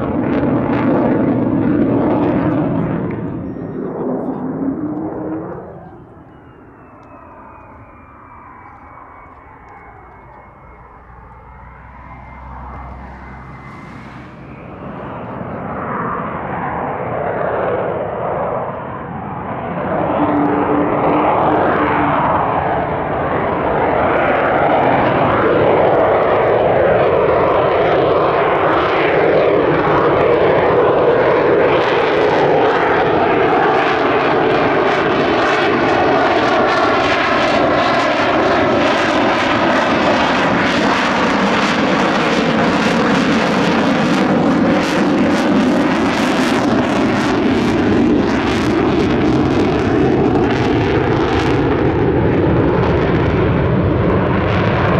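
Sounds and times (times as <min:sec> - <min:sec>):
jet engine roar: 0:00.0 - 0:54.9.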